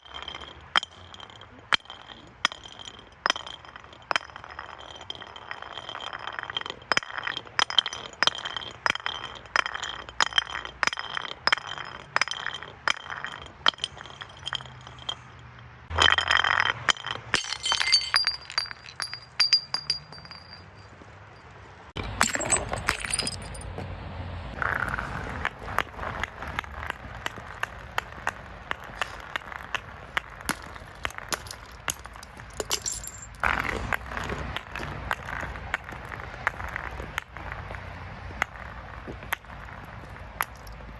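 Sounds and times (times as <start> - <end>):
glass bottles breaking and crunching: 0.0 - 20.9, 22.0 - 23.7, 28.7 - 33.5.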